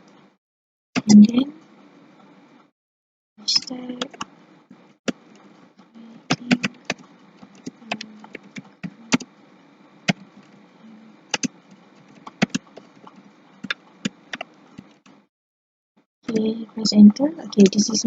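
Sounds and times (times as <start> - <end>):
computer keyboard typing: 6.3 - 9.3, 10.1 - 10.6, 11.3 - 15.2.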